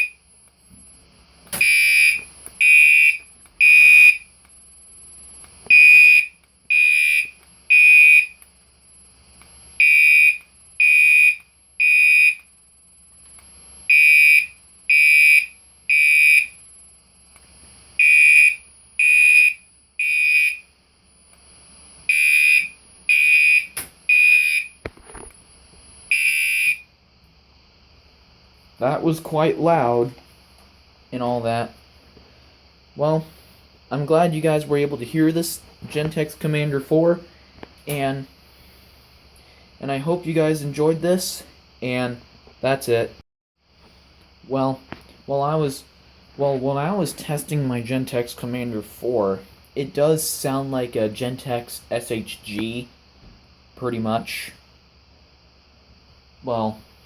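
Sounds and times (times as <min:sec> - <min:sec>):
fire alarm horn blasts: 0:00.0 - 0:00.5, 0:01.5 - 0:08.4, 0:09.7 - 0:17.0, 0:18.0 - 0:21.3, 0:21.9 - 0:24.9, 0:26.1 - 0:27.0
faint high-pitched whine: 0:00.0 - 0:57.0.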